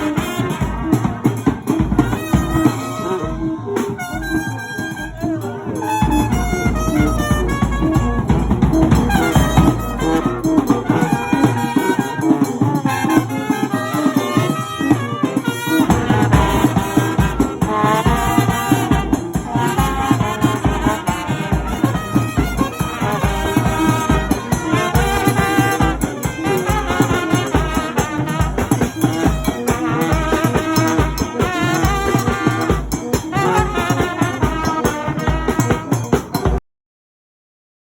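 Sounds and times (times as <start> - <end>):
brass band playing dance music: 0.0 - 36.6.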